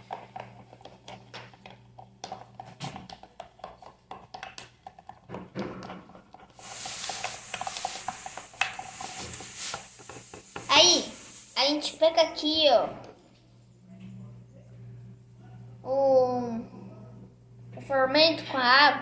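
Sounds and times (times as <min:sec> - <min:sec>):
spoon stirring slime in plastic pot: 0:00.0 - 0:10.9
steady hiss: 0:06.6 - 0:12.5.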